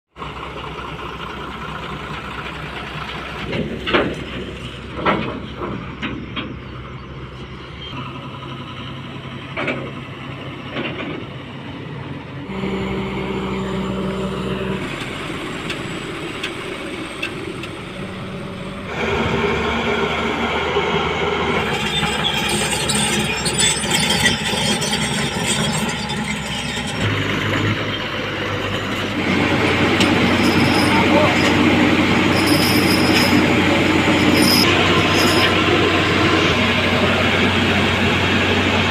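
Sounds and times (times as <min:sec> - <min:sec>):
heavy machinery diesel engines: 0:00.1 - 0:38.9
sharp metal clanks: 0:29.9 - 0:35.6.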